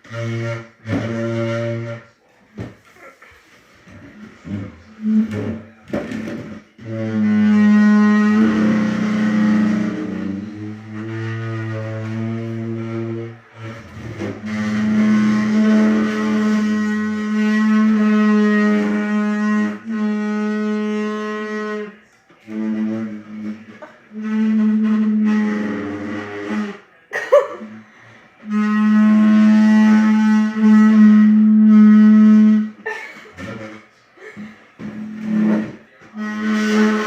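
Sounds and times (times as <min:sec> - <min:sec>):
chair squeaking: 0:02.6 - 0:19.1, 0:27.2 - 0:27.8.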